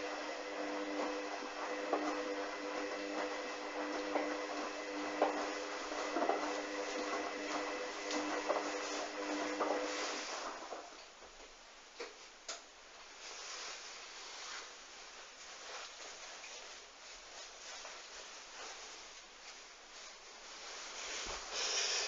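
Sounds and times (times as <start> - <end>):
washing machine motor whirring: 0.0 - 11.0
water and laundry sloshing in drum: 0.6 - 10.9.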